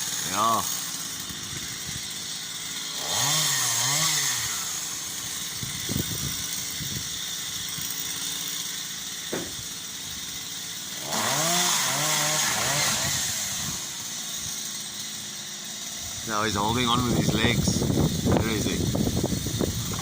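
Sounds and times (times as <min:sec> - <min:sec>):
chainsaw revving: 0:00.0 - 0:20.0
short knocks: 0:09.3 - 0:09.6.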